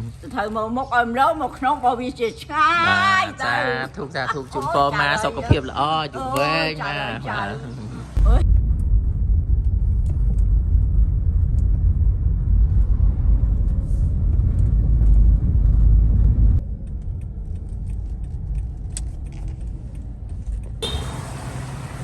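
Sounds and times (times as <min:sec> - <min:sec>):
vehicle rumbling: 0:06.8 - 0:22.0.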